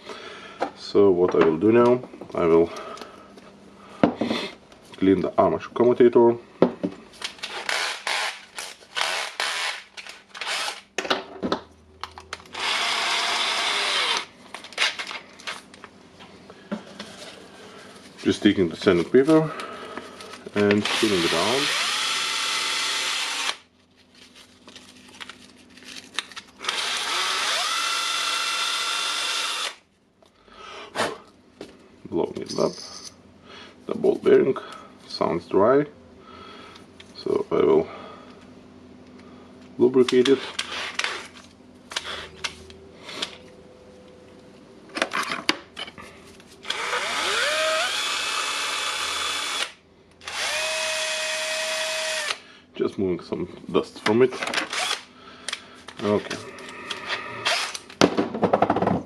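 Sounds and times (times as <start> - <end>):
power tool motor whining: 10.4 - 10.8, 12.5 - 14.3, 20.8 - 23.6, 26.6 - 29.8, 46.7 - 52.4, 54.7 - 55.0, 57.4 - 57.8.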